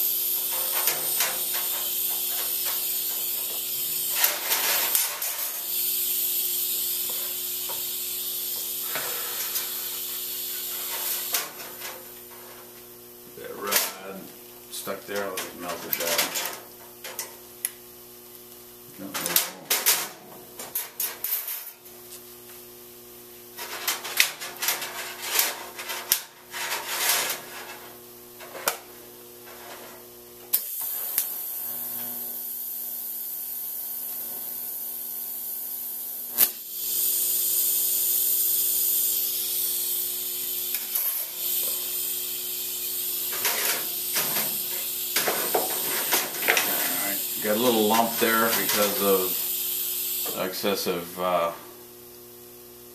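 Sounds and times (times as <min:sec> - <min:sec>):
welding arc hissing: 0:00.0 - 0:16.7, 0:23.6 - 0:51.5
welding machine humming: 0:00.0 - 0:51.9.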